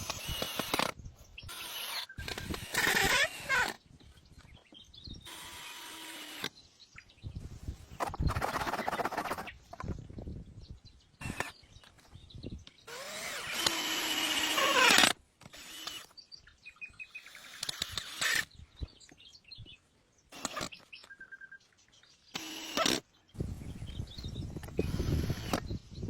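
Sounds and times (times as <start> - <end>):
power drill running: 0.0 - 3.8, 5.2 - 6.5, 11.2 - 11.5, 12.9 - 16.1, 17.4 - 18.5, 20.3 - 20.7, 22.3 - 23.0, 24.6 - 25.7
woodworking sounds: 0.0 - 6.6, 11.2 - 16.2, 22.3 - 23.1, 24.6 - 25.7
bird chirping: 0.2 - 14.6, 15.7 - 26.0.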